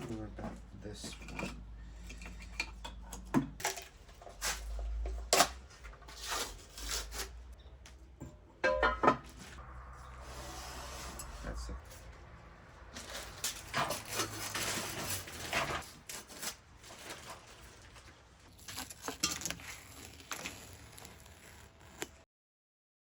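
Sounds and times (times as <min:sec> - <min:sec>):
metal parts and tools clinking: 0:13.0 - 0:17.6, 0:18.5 - 0:22.0.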